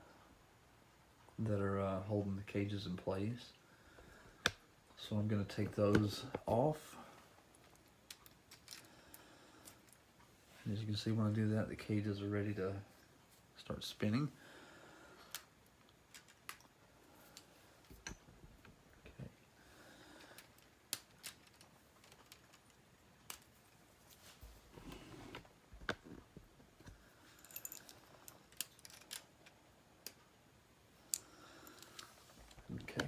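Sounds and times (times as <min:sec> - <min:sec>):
plastic parts clicking and snapping: 0:15.3 - 0:16.7, 0:20.2 - 0:23.5, 0:26.8 - 0:30.3.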